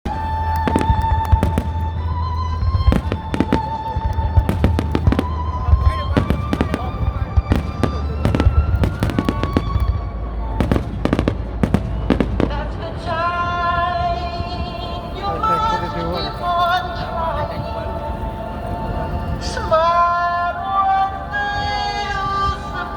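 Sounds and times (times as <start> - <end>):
music playing: 0.0 - 22.9
fireworks bangs: 0.1 - 15.7
low rumble: 0.1 - 22.8.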